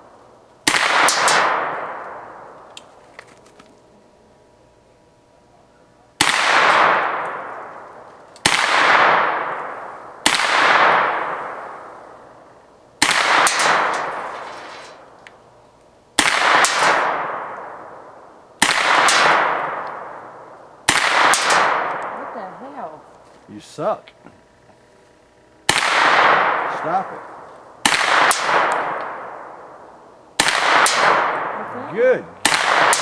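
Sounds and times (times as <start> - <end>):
gunshots: 0.6 - 2.5, 6.2 - 12.1, 13.0 - 15.1, 16.2 - 22.5, 25.6 - 29.8, 30.4 - 33.0
ringing after gunshot: 13.0 - 15.1.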